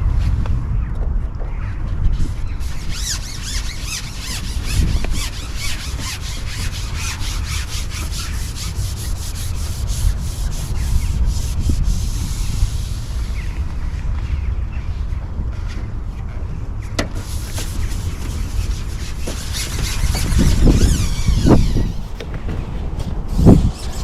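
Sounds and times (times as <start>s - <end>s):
steady low rumble: 0.0s - 24.0s
faint squeaks: 2.1s - 8.7s, 17.3s - 22.2s
fast rubbing strokes: 2.1s - 13.6s, 17.1s - 22.2s, 23.3s - 24.0s.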